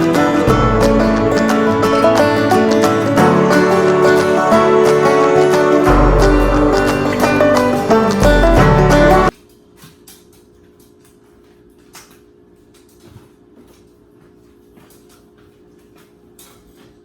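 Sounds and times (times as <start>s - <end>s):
background music: 0.0s - 9.3s.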